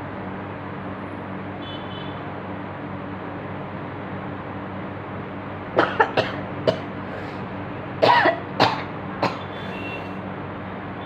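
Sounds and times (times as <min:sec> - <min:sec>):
woman coughing: 0:05.8 - 0:06.9, 0:08.0 - 0:09.5.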